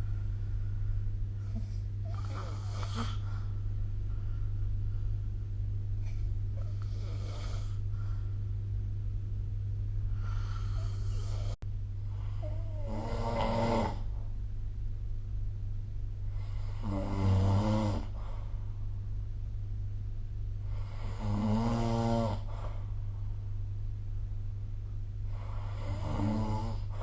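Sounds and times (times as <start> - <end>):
soft breaths: 0.0 - 8.7, 10.0 - 13.0, 18.1 - 19.0, 22.4 - 23.7, 25.2 - 27.0
low steady hum: 0.0 - 27.0
person snoring: 1.4 - 3.3, 6.6 - 7.8, 10.1 - 11.6, 12.3 - 14.1, 16.3 - 18.2, 20.7 - 22.8, 25.3 - 27.0.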